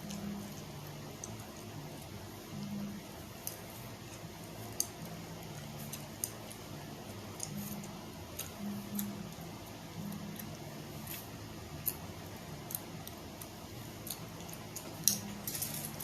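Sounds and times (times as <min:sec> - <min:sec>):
chewing gum clicking: 0:03.4 - 0:06.6.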